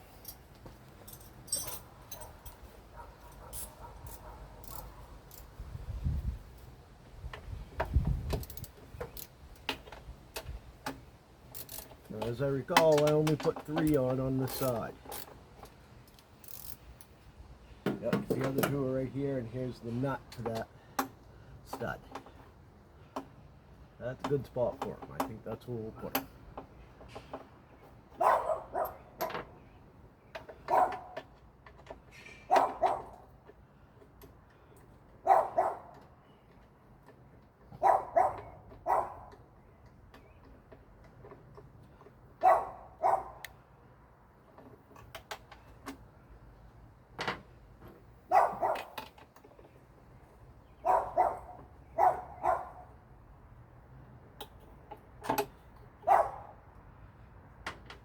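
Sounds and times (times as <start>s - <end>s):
dog barking: 3.0s - 5.0s, 28.2s - 29.0s, 30.7s - 31.1s, 35.3s - 35.9s, 37.8s - 39.2s, 42.4s - 43.4s, 48.3s - 48.9s, 50.8s - 52.9s, 56.1s - 56.5s.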